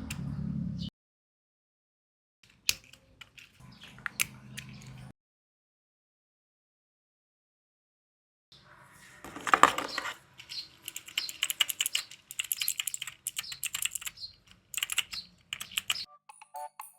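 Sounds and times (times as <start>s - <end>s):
plastic clickers clicking: 2.5s - 5.0s, 9.6s - 16.0s
rustling handling noise: 2.5s - 5.1s, 9.0s - 11.1s.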